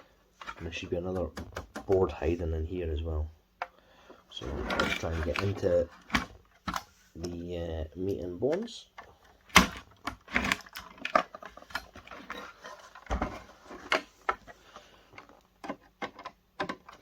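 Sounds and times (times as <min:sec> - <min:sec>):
plastic casing clicks and knocks: 0:00.4 - 0:02.0, 0:08.5 - 0:12.4, 0:15.2 - 0:17.0.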